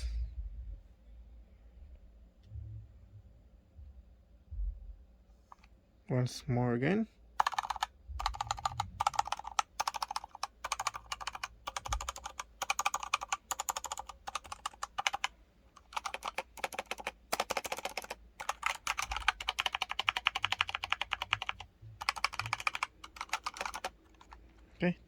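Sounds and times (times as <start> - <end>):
mechanical keyboard typing: 7.4 - 24.6.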